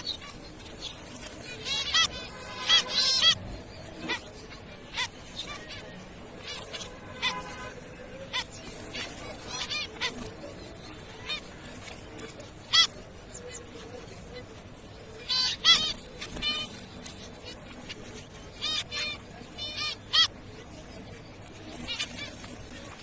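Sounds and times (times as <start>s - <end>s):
finches honking calls: 0.0s - 11.5s, 15.2s - 20.4s.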